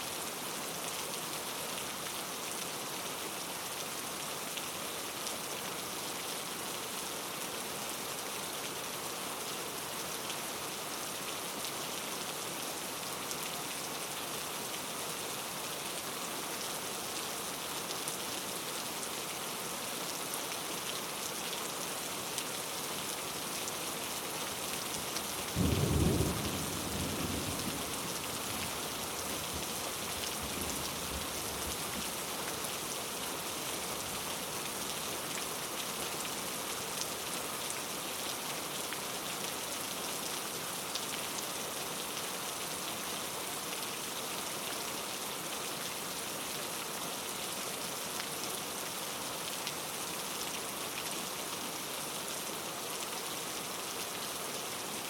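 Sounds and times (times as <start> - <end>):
heavy rain falling: 8.7 - 44.1.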